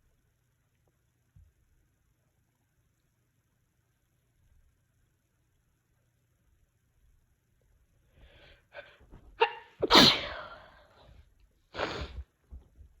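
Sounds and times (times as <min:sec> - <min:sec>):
person sneezing: 0:08.8 - 0:10.9, 0:11.8 - 0:12.2
puff of breath: 0:11.8 - 0:12.3.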